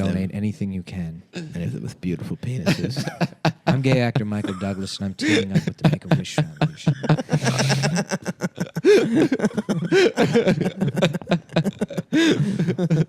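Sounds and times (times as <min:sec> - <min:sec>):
men laughing: 0:02.6 - 0:13.0.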